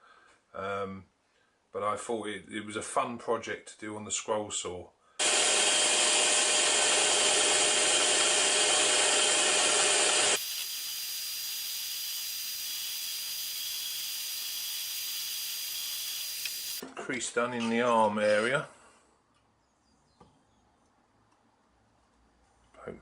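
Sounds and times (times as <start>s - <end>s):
scroll saw cutting plywood: 5.2s - 16.8s.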